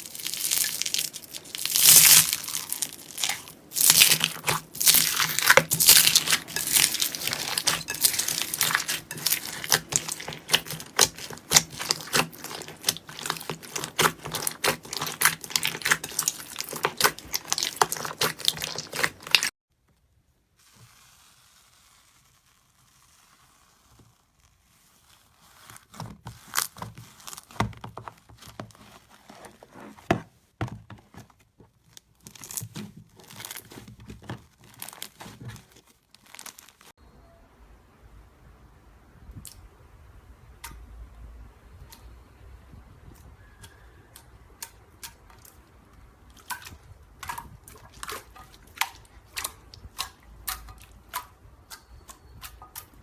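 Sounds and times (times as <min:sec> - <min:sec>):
slime crackling and popping: 0:00.0 - 0:19.5, 0:34.5 - 0:36.9.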